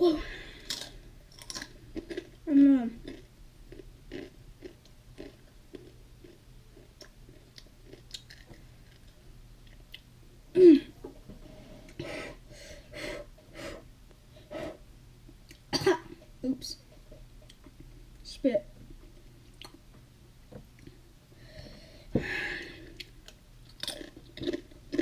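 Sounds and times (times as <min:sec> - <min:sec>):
person chewing chips: 0:00.6 - 0:02.4, 0:03.0 - 0:10.0, 0:23.0 - 0:25.0.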